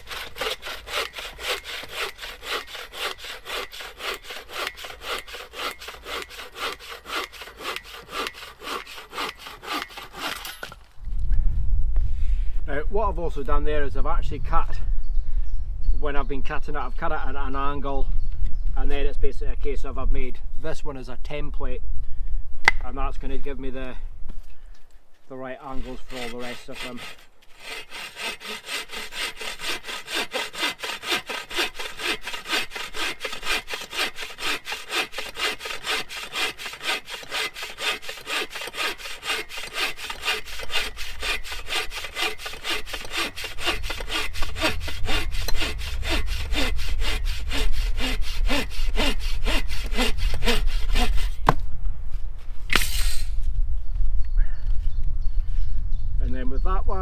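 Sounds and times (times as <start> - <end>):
hand saw cutting wood: 0.0 - 10.8, 25.6 - 51.6, 52.7 - 53.4.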